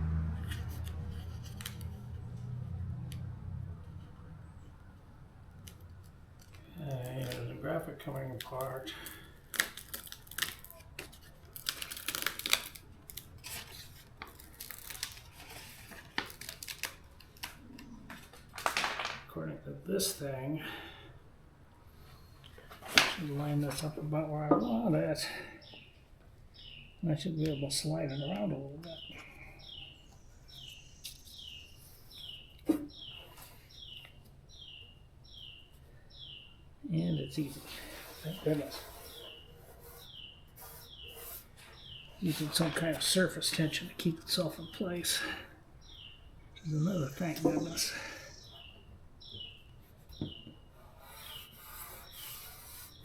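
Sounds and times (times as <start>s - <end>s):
vinyl sheet crackling and tearing: 7.0s - 18.8s
bird calling: 44.4s - 53.0s.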